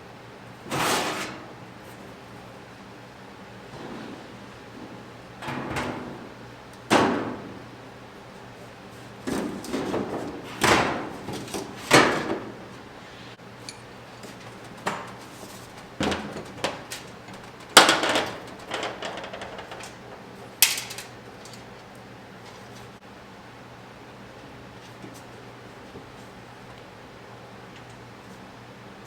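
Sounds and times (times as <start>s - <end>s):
sheet metal panels clanking: 3.7s - 7.7s, 14.5s - 21.7s.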